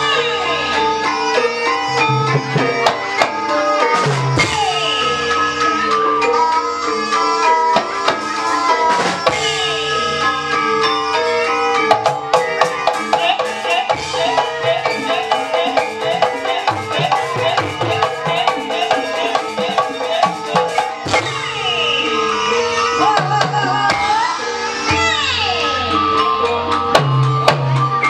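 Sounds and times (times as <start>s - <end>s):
wavering melody line: 0.0s - 28.0s
hand drum strokes: 11.9s - 21.5s.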